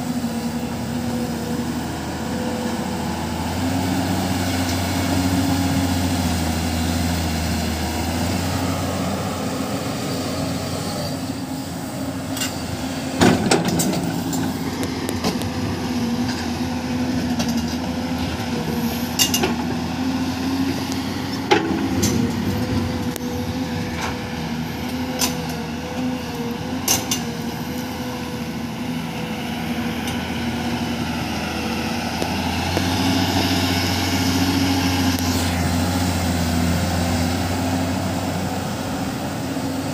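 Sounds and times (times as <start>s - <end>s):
diesel excavator engine: 0.0s - 39.9s
metal clanks and knocks: 13.2s - 14.5s, 21.5s - 22.9s.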